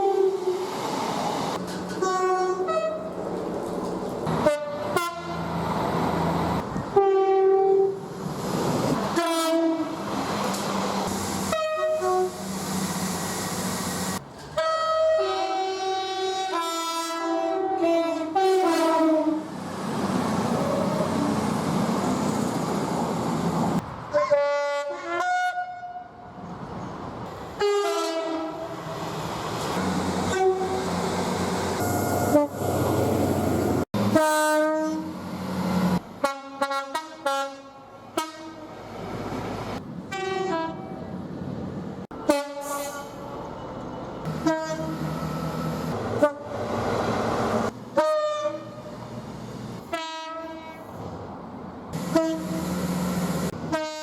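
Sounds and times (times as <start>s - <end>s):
trains passing at speed: 0.0s - 54.0s
train two-tone horn blasts: 2.0s - 3.1s, 4.3s - 5.5s, 6.9s - 8.0s, 9.1s - 10.0s, 11.4s - 12.5s, 14.6s - 19.5s, 24.1s - 26.1s, 27.6s - 28.8s, 30.3s - 30.8s, 31.8s - 32.7s, 34.0s - 35.2s, 36.2s - 38.8s, 40.1s - 41.0s, 42.1s - 43.3s, 44.3s - 45.1s, 46.2s - 46.6s, 47.9s - 49.0s, 49.8s - 50.9s, 52.0s - 54.0s.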